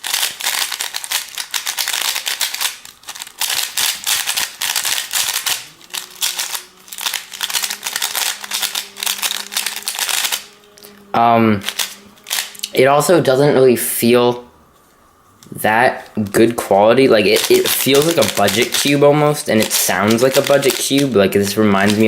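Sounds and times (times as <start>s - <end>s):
speed cube clicking and rattling: 0.0s - 11.0s, 11.6s - 13.2s, 17.1s - 22.0s.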